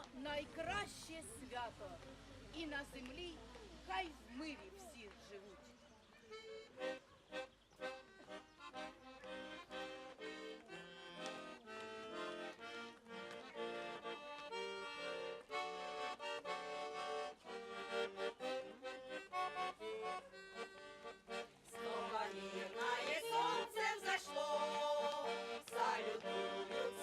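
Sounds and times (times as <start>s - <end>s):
accordion melody over chords: 6.2s - 27.0s.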